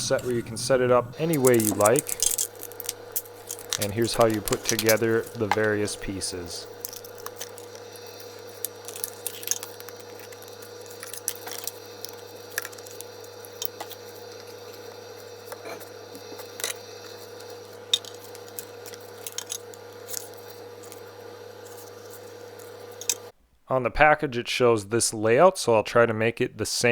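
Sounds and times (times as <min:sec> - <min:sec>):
background hum: 0:00.0 - 0:23.8
plastic track pieces clicking: 0:01.2 - 0:14.0, 0:17.9 - 0:21.0.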